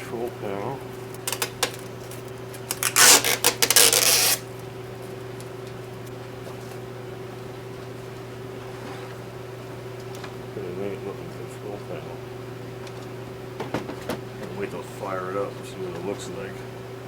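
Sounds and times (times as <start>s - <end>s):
steady low hum: 0.0s - 17.0s
plastic film peeling crackle: 1.0s - 6.2s.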